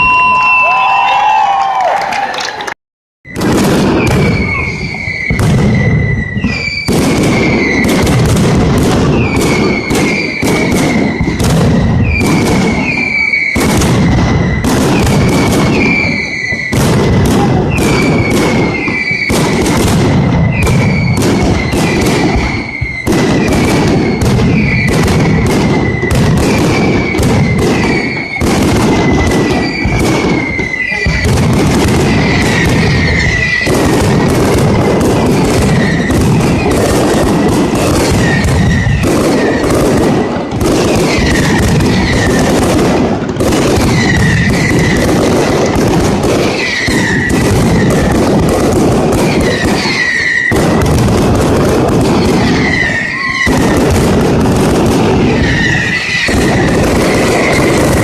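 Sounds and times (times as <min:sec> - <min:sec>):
short falling whistle: 0:00.0 - 0:01.9, 0:04.1 - 0:07.8
firecracker bangs: 0:03.3 - 0:58.0.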